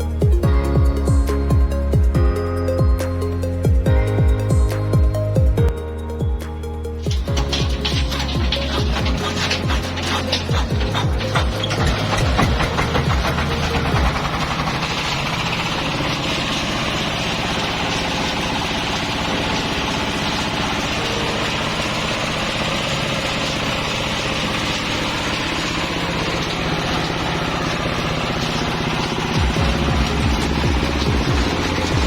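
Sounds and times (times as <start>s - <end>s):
plastic shredding machine running: 7.0s - 32.0s.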